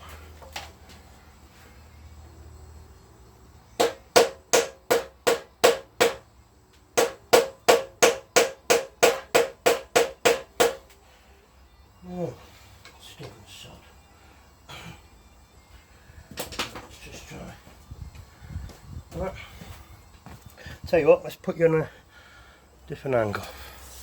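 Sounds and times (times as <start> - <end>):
hammer blows on metal: 3.8 - 6.2, 7.0 - 11.0.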